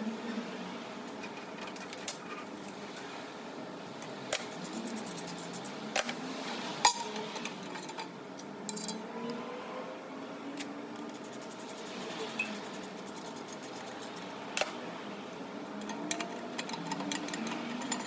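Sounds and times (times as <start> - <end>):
steady background noise: 0.0 - 18.0
metal tools clinking and knocking: 8.7 - 9.0, 15.8 - 18.0.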